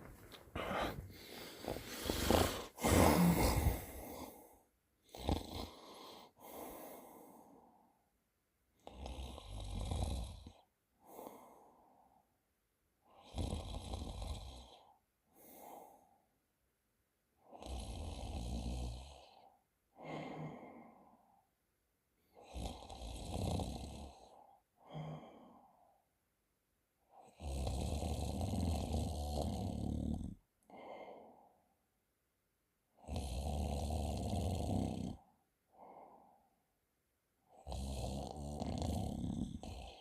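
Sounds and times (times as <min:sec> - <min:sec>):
quiet breath: 0:00.0 - 0:08.2, 0:08.8 - 0:12.4, 0:13.0 - 0:16.4, 0:19.1 - 0:21.6, 0:22.2 - 0:26.2, 0:29.6 - 0:31.9, 0:34.8 - 0:36.7
man snoring: 0:00.6 - 0:07.7, 0:08.8 - 0:11.7, 0:13.1 - 0:16.0, 0:17.4 - 0:21.2, 0:22.3 - 0:25.7, 0:27.2 - 0:31.4, 0:33.0 - 0:36.2, 0:37.5 - 0:40.0.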